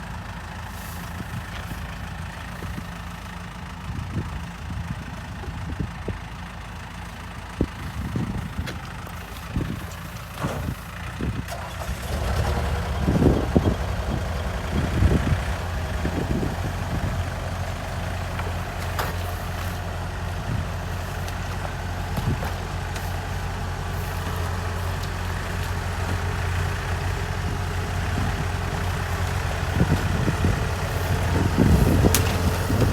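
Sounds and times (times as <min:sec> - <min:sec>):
tractor and harvester engines: 0:00.0 - 0:32.9
knocks and clunks: 0:21.3 - 0:23.4.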